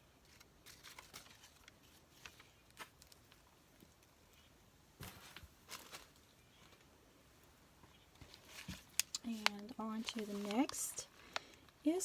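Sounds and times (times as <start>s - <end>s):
paper and packaging rustling: 0.2s - 3.5s, 5.0s - 6.9s, 8.2s - 12.0s.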